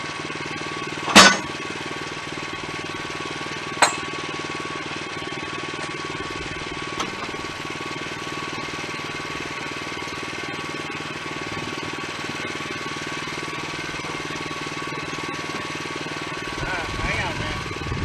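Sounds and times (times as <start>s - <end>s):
sawmill engine pulsing: 0.0s - 18.0s
thin steady whine: 13.6s - 18.0s.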